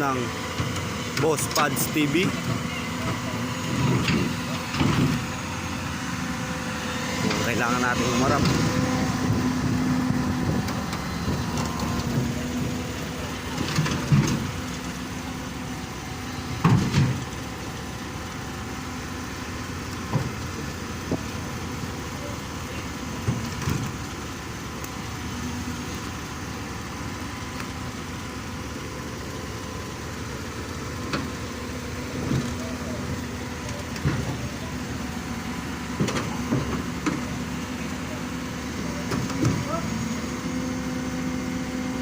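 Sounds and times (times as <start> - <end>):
heavy diesel engine running: 0.0 - 42.0
sharp knocks and clanks: 16.6 - 17.3, 36.0 - 37.3.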